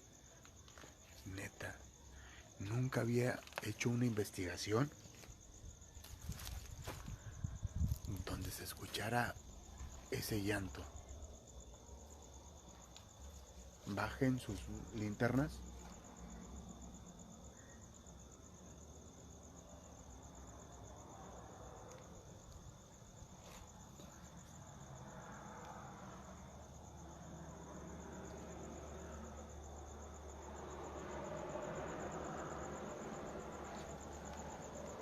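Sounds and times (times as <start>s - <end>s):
crickets trilling: 0.0s - 35.0s.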